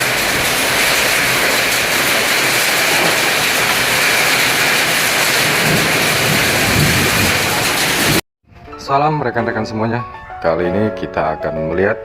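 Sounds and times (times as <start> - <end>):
heavy rain pouring: 0.0 - 8.2.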